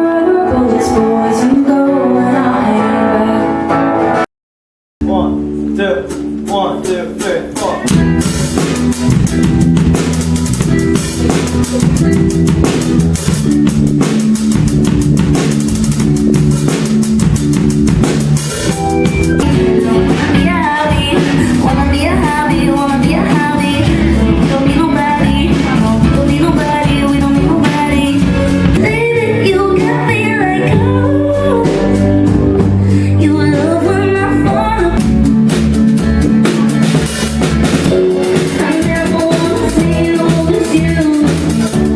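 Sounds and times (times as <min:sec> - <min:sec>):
person singing: 0:00.0 - 0:03.9, 0:18.7 - 0:35.3, 0:38.3 - 0:41.9
band playing: 0:00.0 - 0:04.2, 0:05.0 - 0:41.9.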